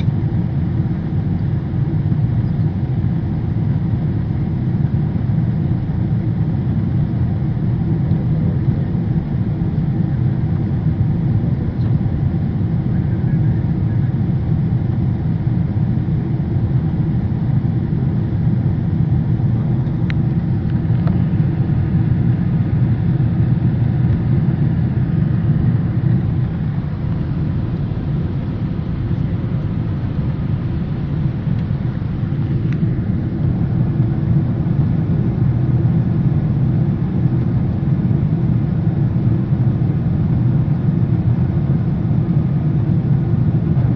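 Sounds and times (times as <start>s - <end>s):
airplane engine rumble: 0.0s - 43.9s.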